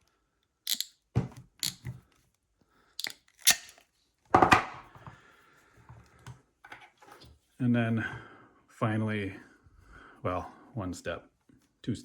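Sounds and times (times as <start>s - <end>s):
hand crimper metal clicks: 0.7s - 0.9s, 3.0s - 3.8s.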